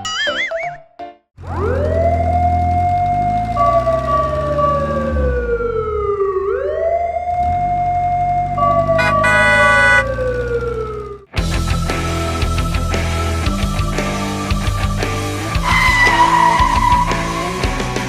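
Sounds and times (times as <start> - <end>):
wailing siren: 1.4 - 11.3, 15.5 - 18.0
low engine rumble: 1.4 - 18.0
cartoon whistle sliding: 9.0 - 10.1, 15.7 - 17.5.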